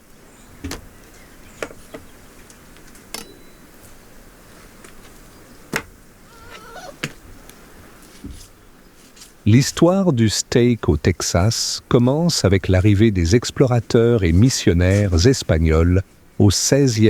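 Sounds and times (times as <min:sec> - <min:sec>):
faint wavering chirp: 0:03.2 - 0:03.8.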